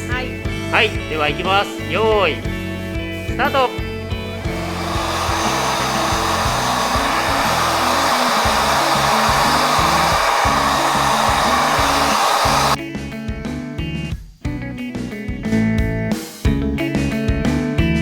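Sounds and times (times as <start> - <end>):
hair dryer blowing: 4.2 - 12.8
background guitar music: 12.8 - 18.0.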